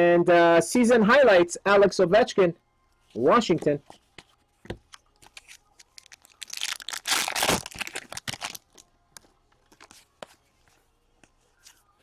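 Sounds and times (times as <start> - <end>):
plastic wrapper crinkling: 5.2 - 10.0.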